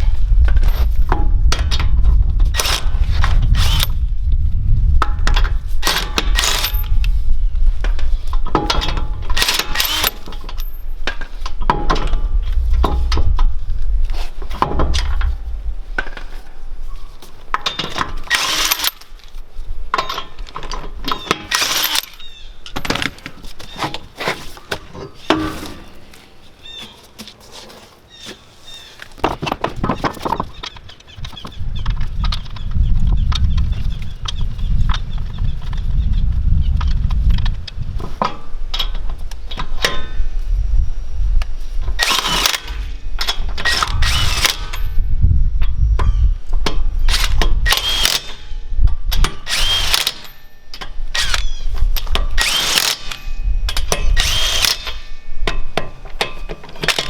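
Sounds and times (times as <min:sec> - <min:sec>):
metallic clinks of lug nuts: 0:19.9 - 0:23.3.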